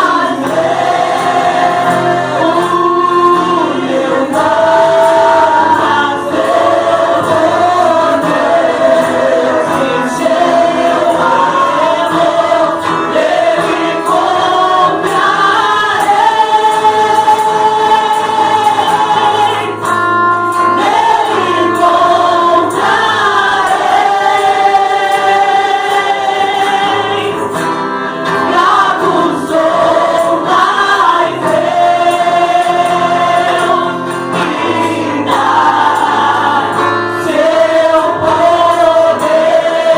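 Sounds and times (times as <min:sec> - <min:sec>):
choir singing gospel song: 0:00.0 - 0:39.9
musical accompaniment: 0:00.0 - 0:39.9.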